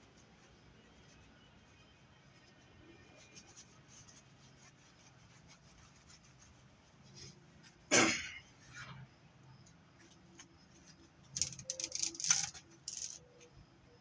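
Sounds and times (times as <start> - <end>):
faint ticks: 11.4 - 13.2
light rustling: 11.4 - 13.2.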